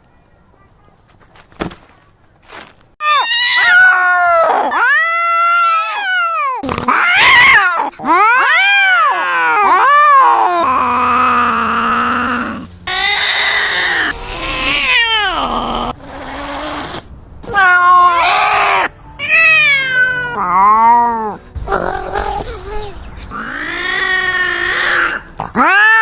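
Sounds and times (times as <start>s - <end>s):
cats yowling in a fight: 3.0s - 21.4s, 23.3s - 26.0s.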